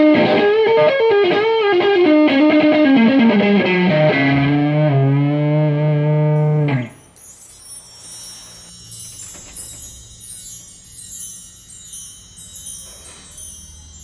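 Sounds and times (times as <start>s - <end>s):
chimes tinkling: 6.4s - 14.0s.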